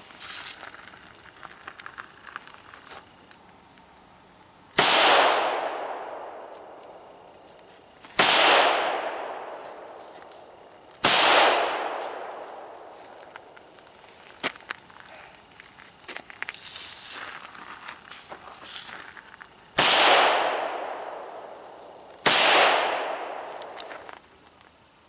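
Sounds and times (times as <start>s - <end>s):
gunshots: 4.8s - 6.5s, 8.2s - 9.6s, 11.0s - 12.8s, 19.8s - 21.3s, 22.2s - 23.7s.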